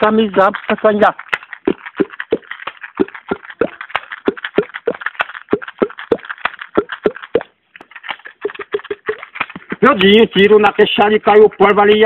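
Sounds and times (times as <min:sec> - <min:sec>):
mouth percussion pops and clicks: 0:00.0 - 0:12.0.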